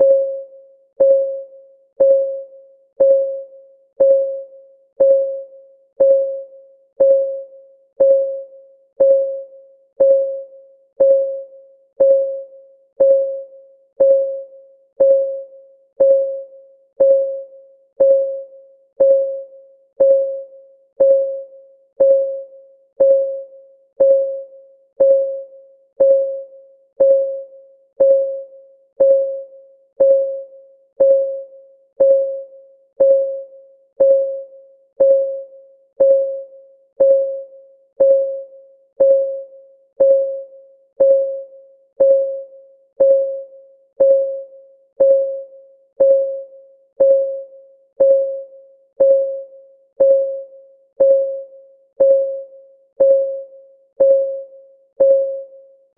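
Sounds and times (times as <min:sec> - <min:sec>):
timer ticking: 0:01.0 - 0:01.4, 0:02.0 - 0:02.4, 0:03.0 - 0:03.4, 0:04.0 - 0:04.4, 0:05.0 - 0:05.4, 0:06.0 - 0:06.4, 0:07.0 - 0:07.4, 0:08.0 - 0:08.4, 0:09.0 - 0:09.4, 0:10.0 - 0:10.4, 0:11.0 - 0:11.4, 0:12.0 - 0:12.4, 0:13.0 - 0:13.4, 0:14.0 - 0:14.4, 0:15.0 - 0:15.4, 0:16.0 - 0:16.4, 0:17.0 - 0:17.4, 0:18.0 - 0:18.4, 0:19.0 - 0:19.4, 0:20.0 - 0:20.4, 0:21.0 - 0:21.4, 0:22.0 - 0:22.4, 0:23.0 - 0:23.4, 0:24.0 - 0:24.4, 0:25.0 - 0:25.4, 0:26.0 - 0:26.4, 0:27.0 - 0:27.4, 0:28.0 - 0:28.4, 0:29.0 - 0:29.4, 0:30.0 - 0:30.4, 0:31.0 - 0:31.4, 0:32.0 - 0:32.4, 0:33.0 - 0:33.4, 0:34.0 - 0:34.4, 0:35.0 - 0:35.4, 0:36.0 - 0:36.4, 0:37.0 - 0:37.4, 0:38.0 - 0:38.4, 0:39.0 - 0:39.4, 0:40.0 - 0:40.4, 0:41.0 - 0:41.4, 0:42.0 - 0:42.4, 0:43.0 - 0:43.4, 0:44.0 - 0:44.4, 0:45.0 - 0:45.4, 0:46.0 - 0:46.4, 0:47.0 - 0:47.4, 0:48.0 - 0:48.4, 0:49.0 - 0:49.4, 0:50.0 - 0:50.4, 0:51.0 - 0:51.4, 0:52.0 - 0:52.4, 0:53.0 - 0:53.4, 0:54.0 - 0:54.4, 0:55.0 - 0:55.4.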